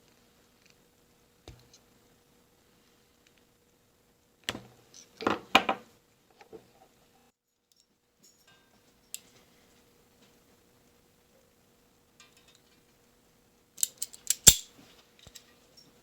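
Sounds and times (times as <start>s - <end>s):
small tools clicking and clattering: 12.2s - 12.8s, 13.8s - 16.0s.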